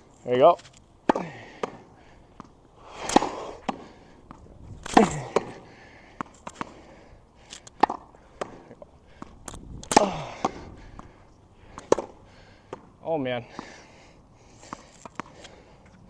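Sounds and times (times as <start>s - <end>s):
person grunting: 9.9s - 10.4s
tennis ball knocks: 11.8s - 12.9s.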